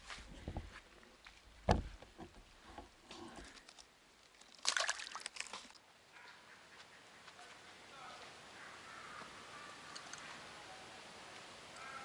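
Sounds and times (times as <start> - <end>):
dull thump: 1.6 - 3.3
water splashing and sloshing: 3.2 - 5.9.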